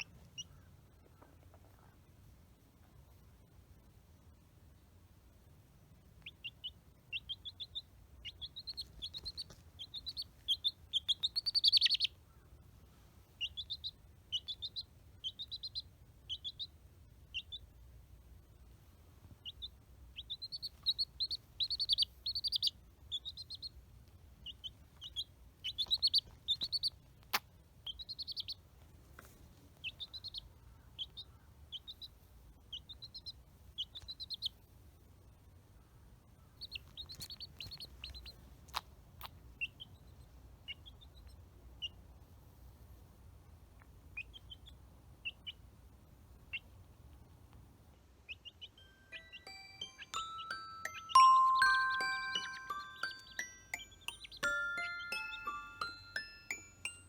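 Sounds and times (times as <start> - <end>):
chick peeping: 0.0 - 1.9, 6.1 - 17.8, 19.2 - 47.6, 48.2 - 57.0.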